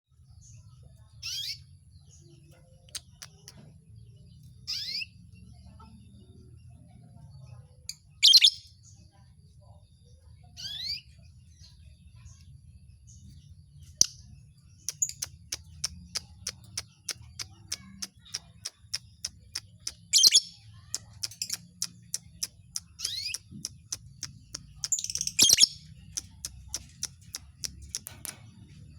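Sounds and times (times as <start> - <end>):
small birds chirping: 0.1 - 28.9
sharp ticking bird notes: 2.8 - 3.7, 13.8 - 28.9.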